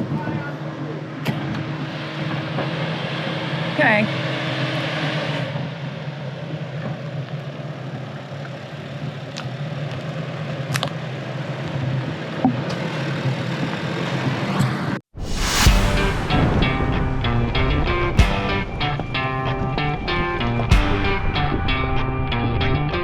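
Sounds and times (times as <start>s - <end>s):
road noise: 0.0s - 23.0s
car engine hum: 0.7s - 14.9s.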